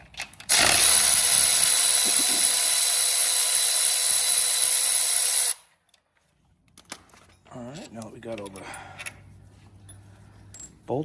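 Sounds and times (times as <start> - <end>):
power tool running: 0.5 - 5.6.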